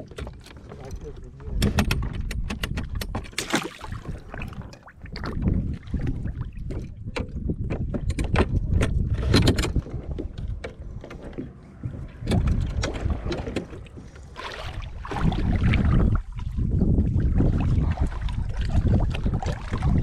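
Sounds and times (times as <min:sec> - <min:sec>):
wind rumble on microphone: 0:00.0 - 0:20.0
knocks against kayak: 0:01.6 - 0:04.8.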